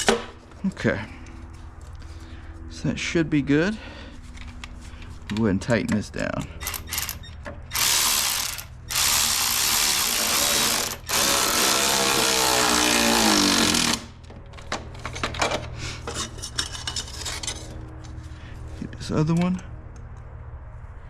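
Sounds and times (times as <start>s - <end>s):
power driver motor whirring: 6.6s - 14.0s.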